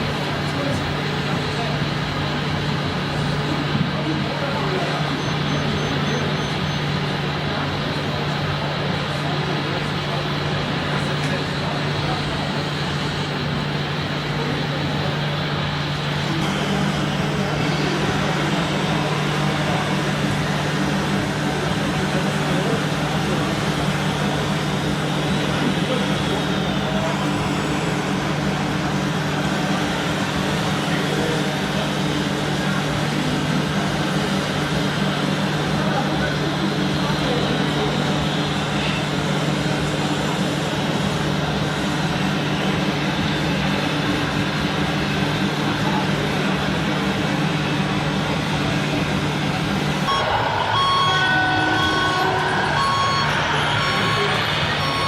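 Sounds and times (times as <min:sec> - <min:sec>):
model truck engine drone: 0:00.0 - 0:55.0
reversing beeps: 0:05.1 - 0:07.0, 0:50.1 - 0:55.0.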